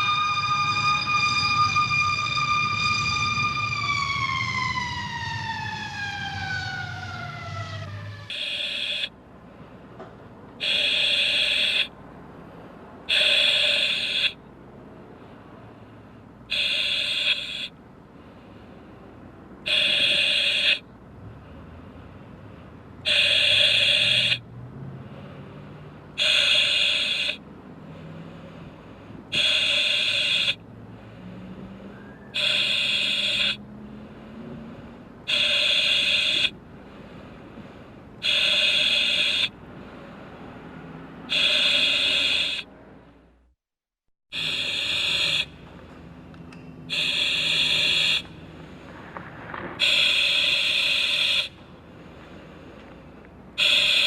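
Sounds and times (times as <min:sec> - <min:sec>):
buzzer alarm tone: 0:08.3 - 0:09.1, 0:10.6 - 0:11.9, 0:13.1 - 0:14.4, 0:16.5 - 0:17.7, 0:19.7 - 0:20.8, 0:23.1 - 0:24.4, 0:29.4 - 0:30.6, 0:32.4 - 0:33.6, 0:35.3 - 0:36.5, 0:38.2 - 0:39.5, 0:41.3 - 0:42.6, 0:44.3 - 0:45.5, 0:46.9 - 0:48.2
low steady rumble: 0:48.3 - 0:49.8.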